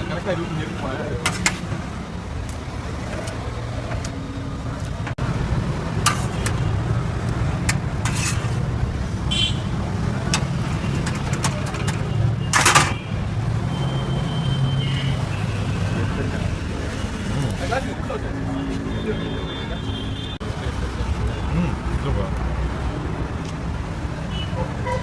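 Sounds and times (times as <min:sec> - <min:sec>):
road traffic rumble: 0:00.0 - 0:25.0
clicks and knocks: 0:10.3 - 0:13.0.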